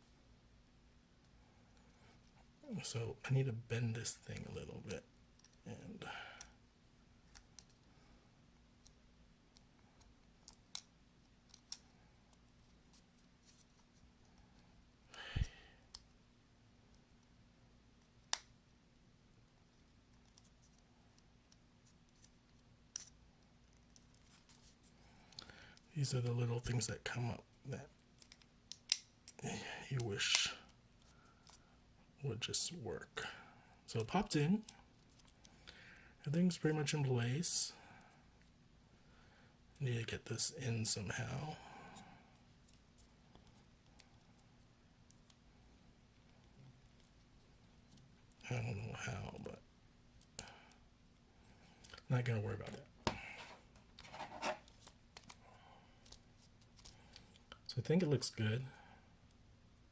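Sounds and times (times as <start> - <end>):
small clicks of parts and tools: 28.2 - 29.4.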